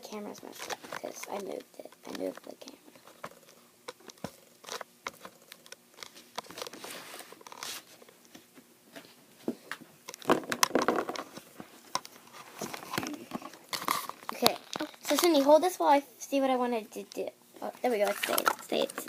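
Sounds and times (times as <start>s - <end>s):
plastic toys clicking and knocking: 10.1s - 11.3s, 18.1s - 19.0s.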